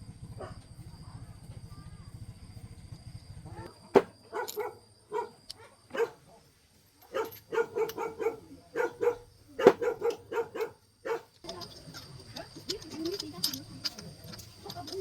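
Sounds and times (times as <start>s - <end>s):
dog barking: 0.4s - 0.6s, 4.3s - 6.3s, 7.1s - 11.4s.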